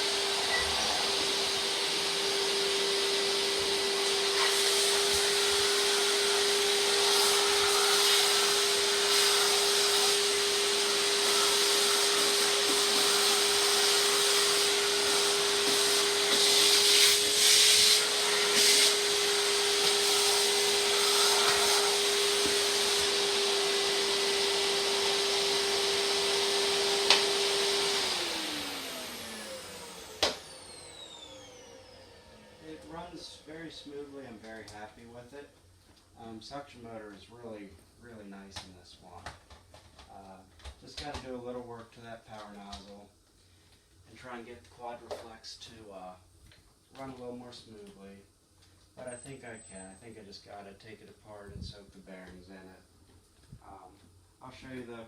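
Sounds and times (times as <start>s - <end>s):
vacuum cleaner whining: 0.0s - 43.0s.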